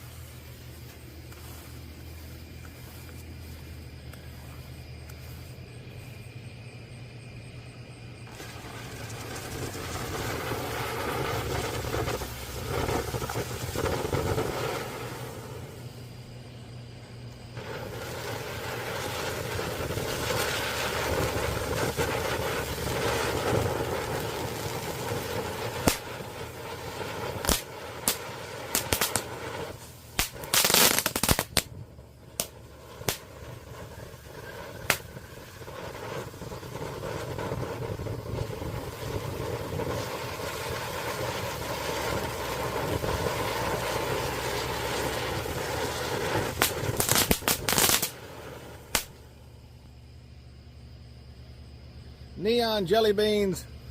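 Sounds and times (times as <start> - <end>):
firework crackling burst: 0.0 - 6.4, 8.0 - 50.0
firework fountain hissing: 0.0 - 51.7
sharp pops: 17.3 - 26.5, 27.3 - 37.9, 46.0 - 49.2.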